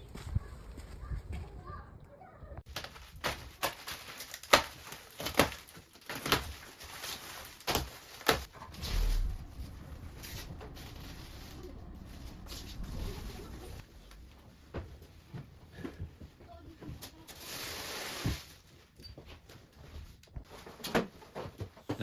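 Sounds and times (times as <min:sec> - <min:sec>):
brief low hum: 0:08.6 - 0:14.2.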